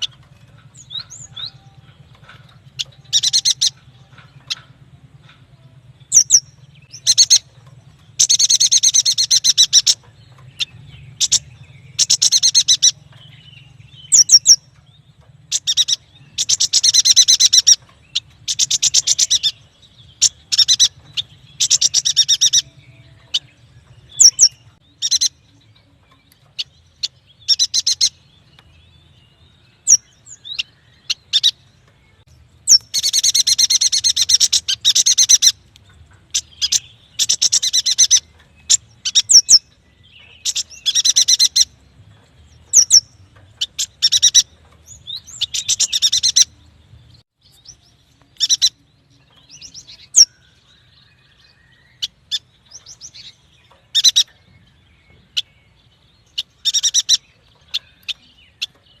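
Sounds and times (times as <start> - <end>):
bird rattling trills: 0.0 - 28.6, 32.5 - 46.6
bird sharp chirps: 0.0 - 41.8, 42.5 - 59.0.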